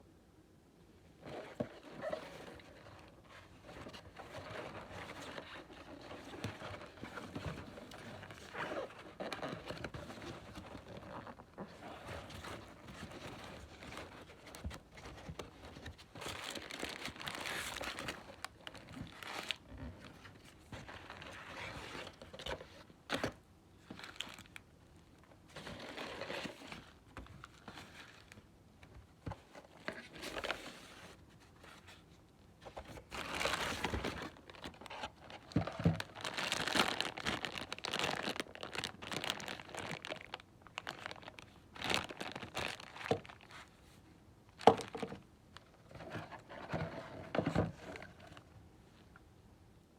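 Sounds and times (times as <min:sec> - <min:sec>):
packaging crinkling and tearing: 0:03.7 - 0:20.1, 0:32.9 - 0:43.8.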